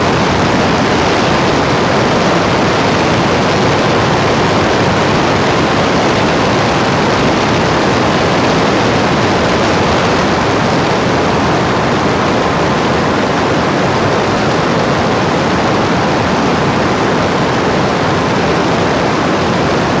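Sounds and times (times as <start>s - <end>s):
loud steady static-like rushing noise: 0.0s - 20.0s.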